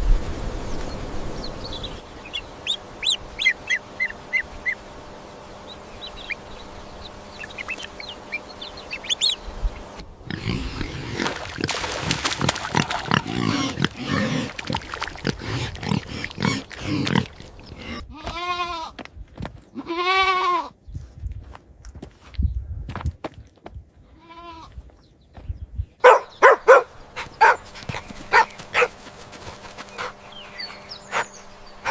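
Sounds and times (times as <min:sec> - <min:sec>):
faint chirps: 0:05.5 - 0:10.8
pig grunting and squealing: 0:10.2 - 0:18.7
goat bleats: 0:16.4 - 0:19.0, 0:19.8 - 0:20.8, 0:24.1 - 0:24.8.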